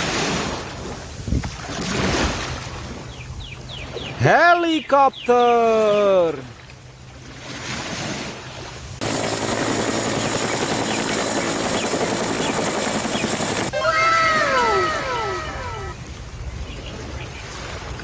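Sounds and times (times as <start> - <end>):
helicopter rotor and engine: 8.8 - 16.0
falling pitched cries: 13.3 - 16.0.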